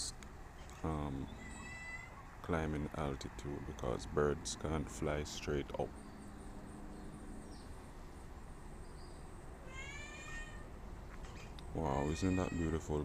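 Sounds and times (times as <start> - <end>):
faint background hum: 0.0 - 13.0
drawn-out animal call: 1.3 - 2.3.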